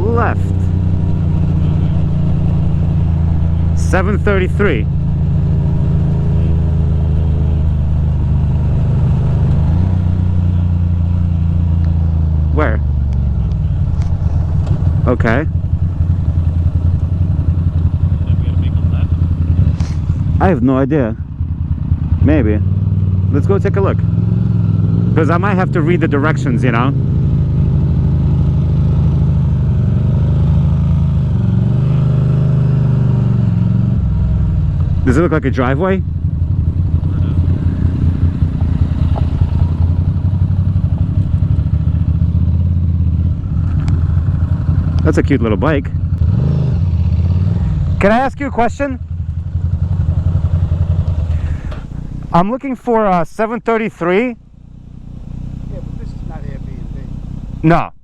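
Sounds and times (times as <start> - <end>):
motorcycle engine running steadily: 0.0 - 58.0.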